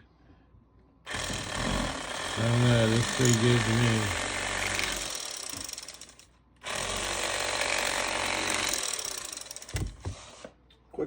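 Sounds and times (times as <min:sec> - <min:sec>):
electric fillet knife buzzing: 0:01.1 - 0:05.6.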